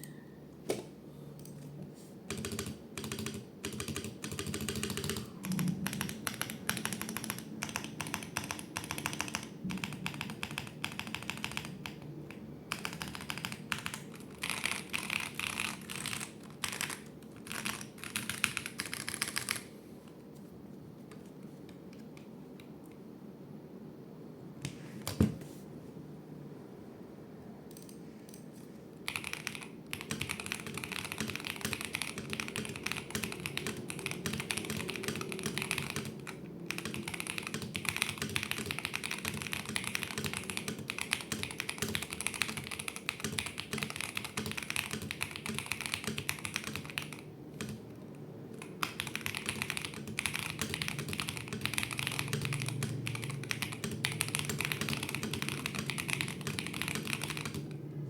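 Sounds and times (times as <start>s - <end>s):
mechanical keyboard typing: 2.3s - 19.7s, 29.0s - 57.8s.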